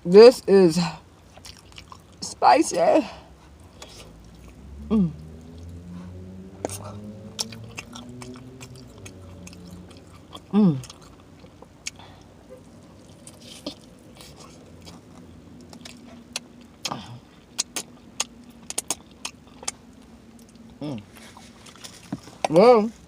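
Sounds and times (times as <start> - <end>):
chewing and lip-smacking: 1.3 - 2.2, 3.4 - 22.7
wet mouth clicks: 15.7 - 19.8.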